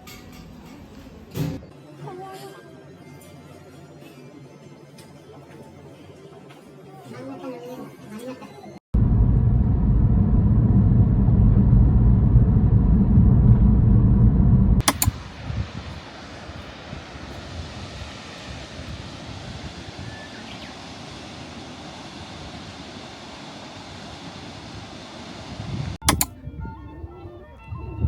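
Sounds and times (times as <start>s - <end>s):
low steady rumble: 9.0s - 26.3s
click: 14.8s - 15.2s, 26.0s - 26.3s.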